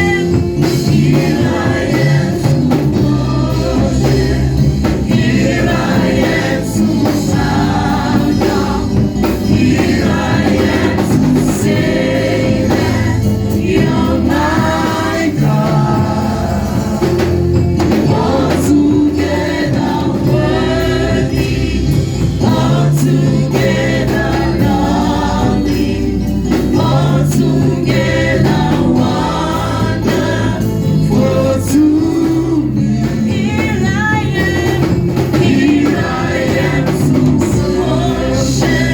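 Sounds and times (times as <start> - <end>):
bass: 0.0 - 38.9
choir singing: 0.0 - 38.9
percussion: 0.0 - 38.9.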